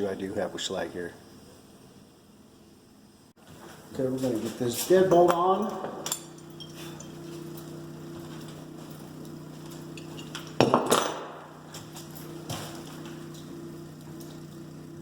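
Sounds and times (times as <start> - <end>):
steady low hum: 0.0 - 15.0
metal lock parts clinking: 5.1 - 7.8.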